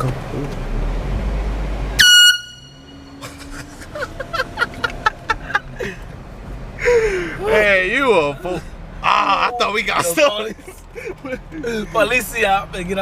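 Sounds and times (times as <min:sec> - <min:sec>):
air horn blast: 0:02.0 - 0:03.2.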